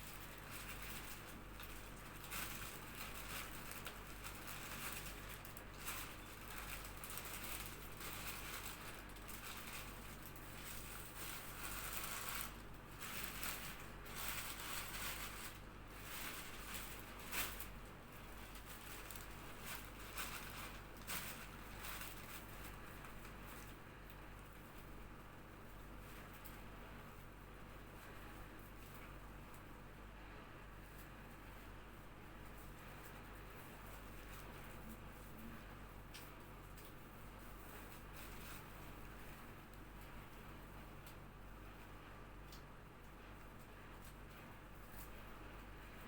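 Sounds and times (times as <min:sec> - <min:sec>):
rustling: 0:00.0 - 0:23.8
steady low hum: 0:00.0 - 0:46.0.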